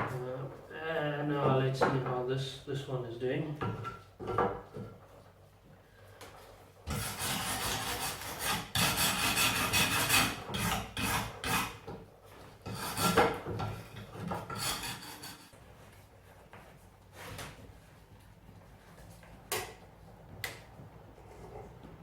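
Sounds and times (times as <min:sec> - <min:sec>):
hand tool scraping paint off metal: 0:06.9 - 0:11.8, 0:12.7 - 0:15.6.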